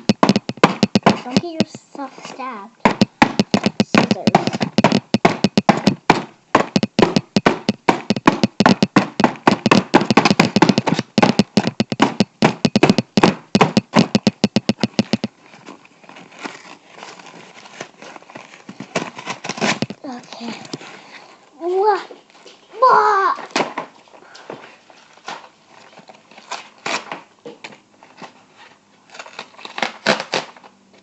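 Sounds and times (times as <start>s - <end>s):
faint rustling: 0.0s - 5.2s, 14.3s - 22.8s
scissors cutting packaging: 14.8s - 20.9s, 26.0s - 27.2s, 29.1s - 30.7s.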